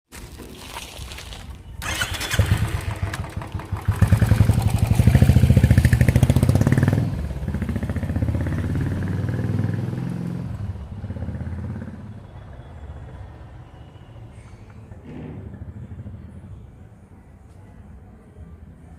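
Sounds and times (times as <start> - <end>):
motorcycle engine revving: 1.8 - 12.2.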